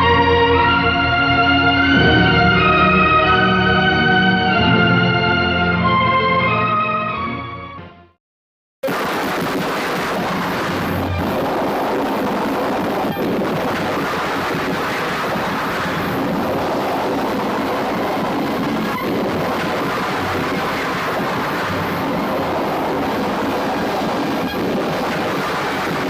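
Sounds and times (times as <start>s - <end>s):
dense rushing rumbling noise: 8.9s - 26.0s.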